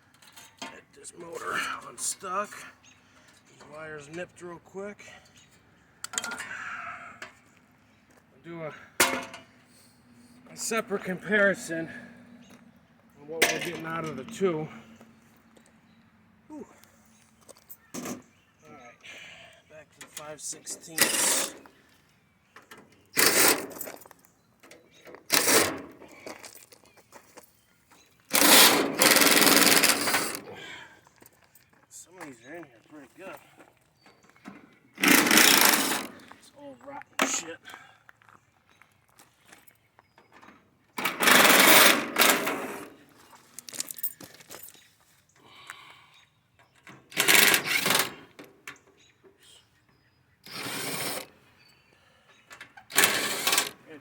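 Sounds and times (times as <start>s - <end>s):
cordless drill running: 28.3s - 30.4s, 35.0s - 36.1s, 50.4s - 51.3s, 52.9s - 53.7s.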